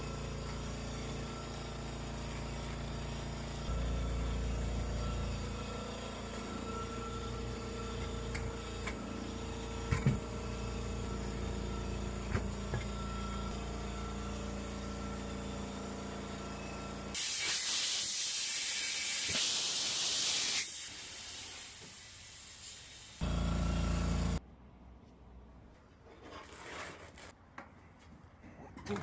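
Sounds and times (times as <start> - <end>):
engine-like hum: 0.0 - 17.2, 23.2 - 24.6
compressed air hissing: 17.2 - 23.3.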